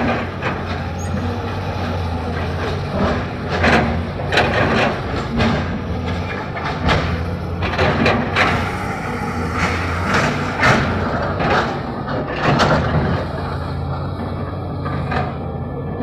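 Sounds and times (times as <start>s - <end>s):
diesel engine running: 0.0s - 16.0s
short rushes of noise: 8.0s - 12.9s.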